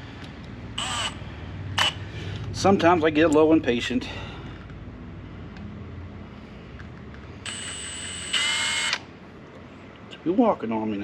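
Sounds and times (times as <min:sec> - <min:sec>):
electric drill whining into metal: 0:00.8 - 0:01.2, 0:07.5 - 0:09.0.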